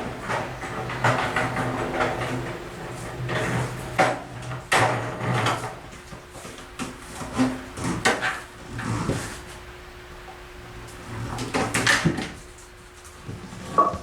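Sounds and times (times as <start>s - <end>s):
tools knocking and scraping on wood: 0.0s - 5.8s.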